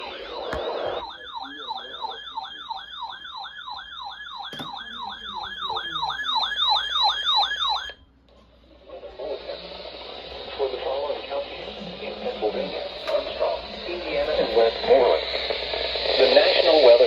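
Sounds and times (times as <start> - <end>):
weather alert radio alarm sweeps: 0.0 - 8.0.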